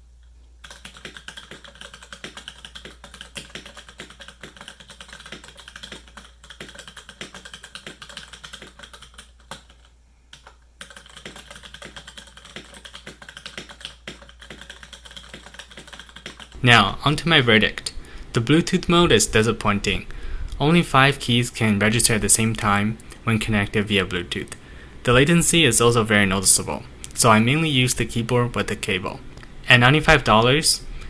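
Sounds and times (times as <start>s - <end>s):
mechanical keyboard typing: 0.6s - 16.6s.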